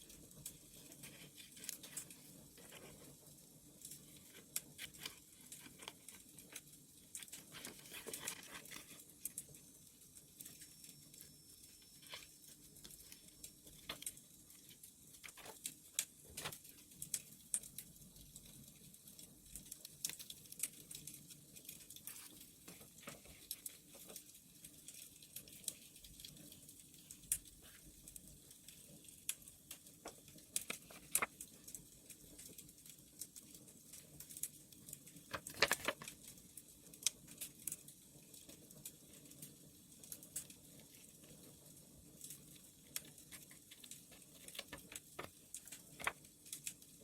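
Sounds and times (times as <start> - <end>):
wood fire crackling: 0.0 - 47.0.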